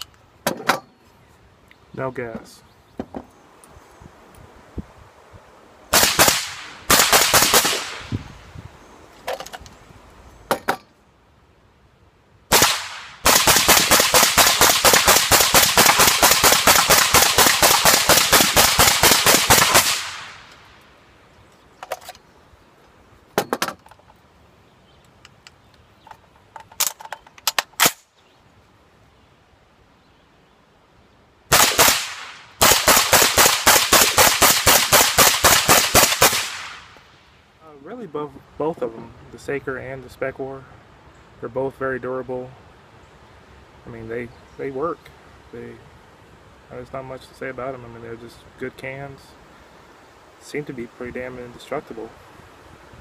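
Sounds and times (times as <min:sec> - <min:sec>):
suppressed rifle shots: 0:05.9 - 0:08.1, 0:12.5 - 0:20.5, 0:31.5 - 0:37.0.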